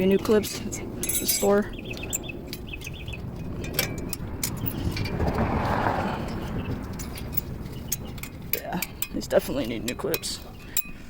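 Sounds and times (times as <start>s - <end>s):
vehicle passing by: 4.2s - 8.4s.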